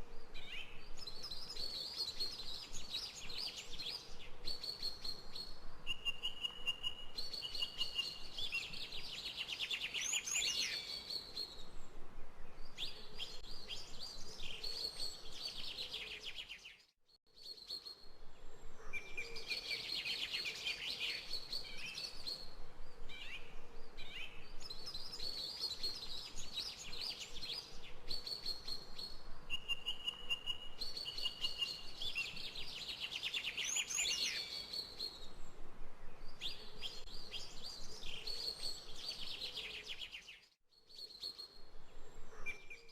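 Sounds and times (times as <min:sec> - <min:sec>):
birds singing and chirping: 0:00.3 - 0:11.7, 0:18.7 - 0:35.4.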